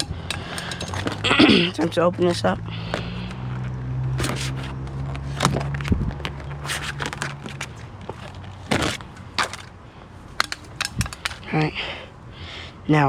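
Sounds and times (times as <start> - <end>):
packaging crackling and scraping: 0.0 - 2.0, 2.8 - 9.8, 10.4 - 11.5.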